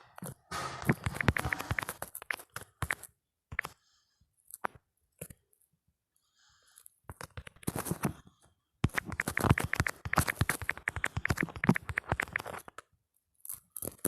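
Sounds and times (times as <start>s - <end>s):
typing on smartphone keyboard: 0.9s - 3.8s, 8.8s - 12.9s.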